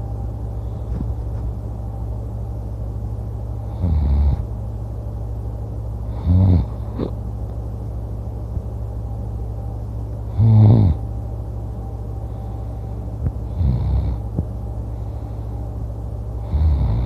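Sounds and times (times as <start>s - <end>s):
low steady hum: 0.0s - 17.0s
man snoring: 3.7s - 4.5s, 6.1s - 7.1s, 10.3s - 11.0s, 13.5s - 14.2s, 16.4s - 17.0s.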